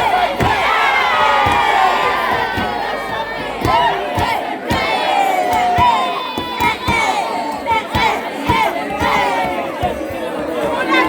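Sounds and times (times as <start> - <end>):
low thump: 0.0 - 5.9
crowd cheering and screaming: 0.0 - 7.7.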